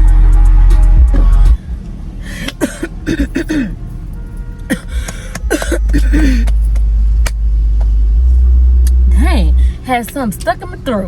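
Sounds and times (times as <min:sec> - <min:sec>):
low car rumble: 0:00.0 - 0:11.0
woman coughing: 0:02.6 - 0:03.8, 0:04.7 - 0:06.5.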